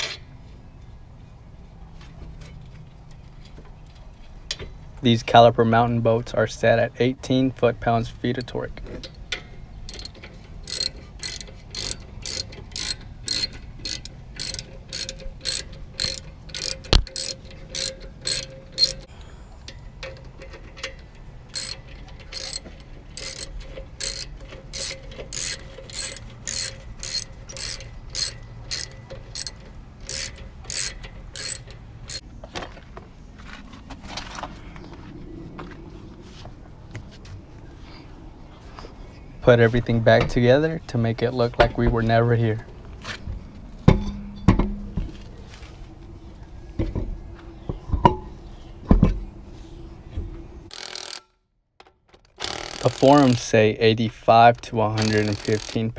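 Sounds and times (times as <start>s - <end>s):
hand ratchet clicking: 8.4s - 19.1s, 20.0s - 32.2s, 50.7s - 51.3s, 52.4s - 53.6s, 54.9s - 55.9s.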